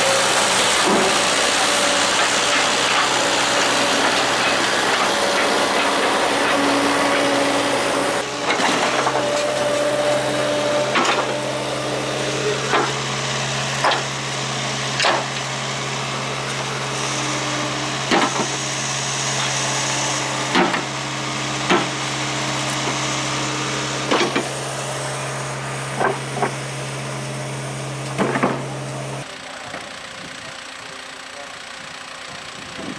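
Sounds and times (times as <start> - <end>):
skid steer engine running: 0.0 - 32.9.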